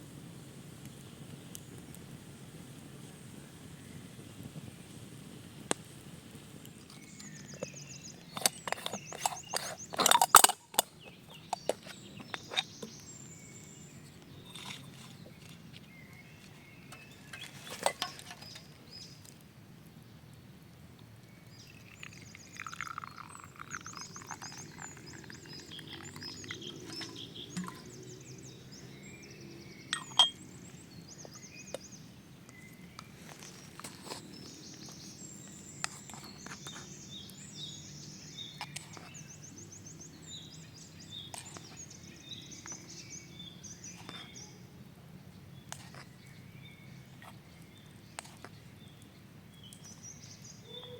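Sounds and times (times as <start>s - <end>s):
high animal or bird calls: 50.6s - 50.9s.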